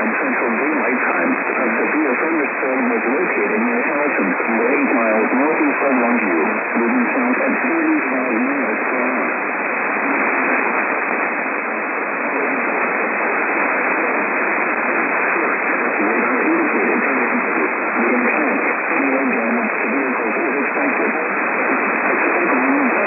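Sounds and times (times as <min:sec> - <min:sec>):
faint voice: 0:00.0 - 0:09.4, 0:15.2 - 0:23.0
radio static hiss: 0:00.0 - 0:23.0.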